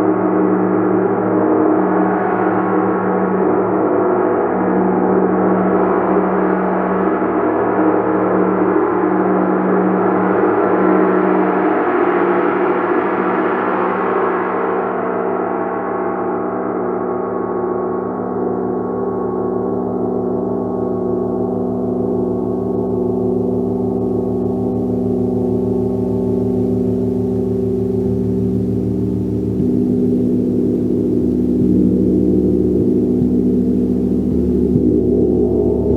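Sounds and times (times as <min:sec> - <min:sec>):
gong ringing: 0:22.2 - 0:35.9.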